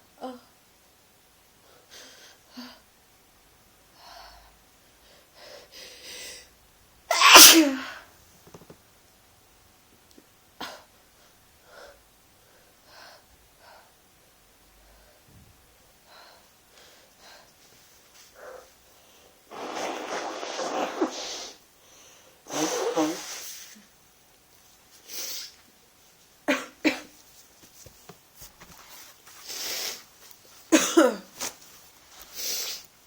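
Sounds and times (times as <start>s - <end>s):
quiet breaths: 3.9s - 6.6s, 10.7s - 19.5s
person sneezing: 7.1s - 8.1s, 19.5s - 21.6s, 22.5s - 23.7s.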